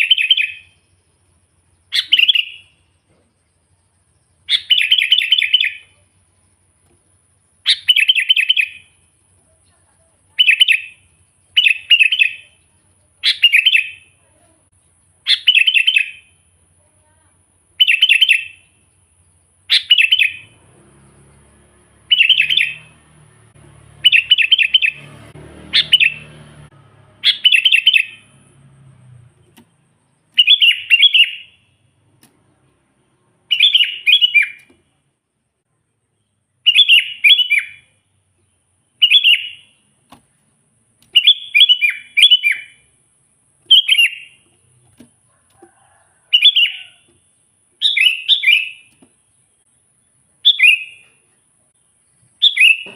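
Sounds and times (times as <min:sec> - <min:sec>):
bulbul singing: 0:00.0 - 0:16.9, 0:17.6 - 0:52.9.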